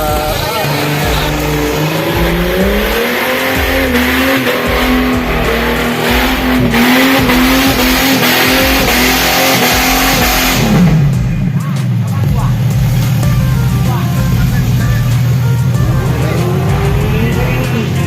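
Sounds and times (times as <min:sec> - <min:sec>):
engine revving: 0:00.0 - 0:18.0.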